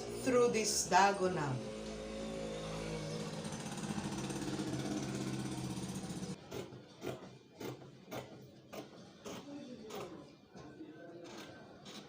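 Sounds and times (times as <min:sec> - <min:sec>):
small engine running: 0:01.1 - 0:06.4.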